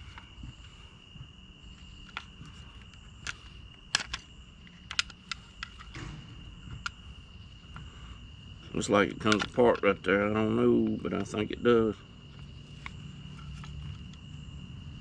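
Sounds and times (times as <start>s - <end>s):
insects chirring: 0.0s - 15.0s
hand tools clicking on metal: 8.8s - 11.4s.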